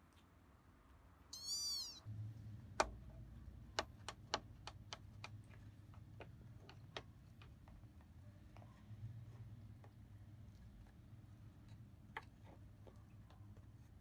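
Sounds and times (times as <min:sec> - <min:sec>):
kitten mewing: 0:01.3 - 0:02.1.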